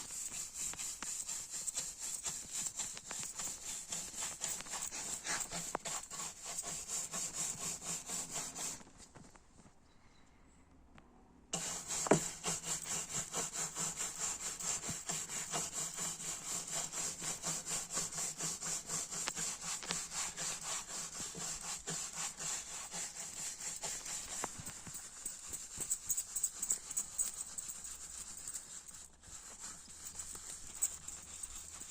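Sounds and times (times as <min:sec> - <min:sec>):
pad scrubbing wood: 0:00.0 - 0:08.8, 0:11.6 - 0:31.9
knocking on wood: 0:12.1 - 0:12.4.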